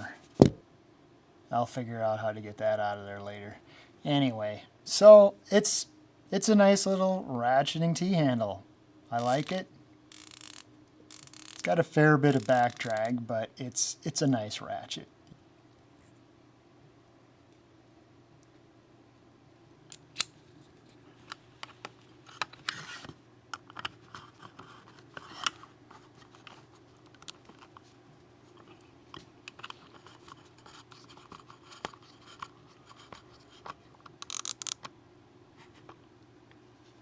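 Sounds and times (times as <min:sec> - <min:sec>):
hand tools clicking and scraping: 0:09.2 - 0:09.6, 0:12.3 - 0:13.1.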